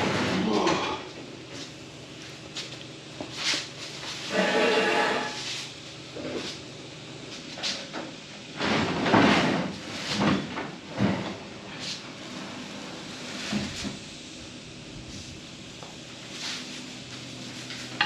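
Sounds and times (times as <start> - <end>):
clunks and scraping knocks: 8.6 - 11.4.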